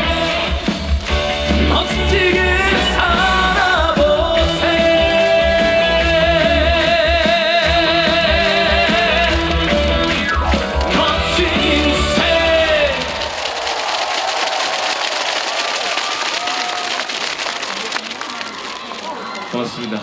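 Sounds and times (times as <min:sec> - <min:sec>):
live song with band: 0:00.0 - 0:15.1.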